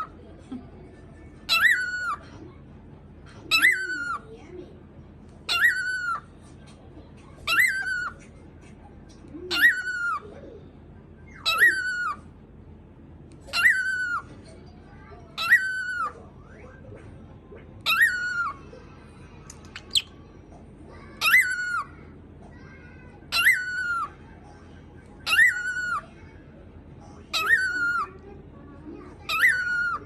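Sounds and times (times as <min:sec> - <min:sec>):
high bird chirp: 0:05.5 - 0:06.2, 0:11.2 - 0:12.2, 0:13.5 - 0:14.3, 0:15.4 - 0:16.7, 0:17.8 - 0:18.6, 0:19.6 - 0:20.2, 0:23.3 - 0:24.2, 0:25.1 - 0:26.1, 0:27.3 - 0:28.1, 0:29.2 - 0:30.0.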